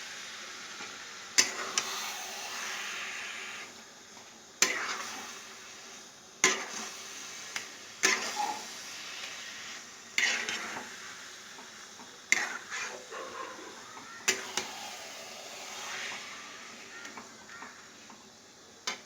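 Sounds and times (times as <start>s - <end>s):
spatula scraping pan: 10.2s - 11.2s, 11.9s - 17.9s.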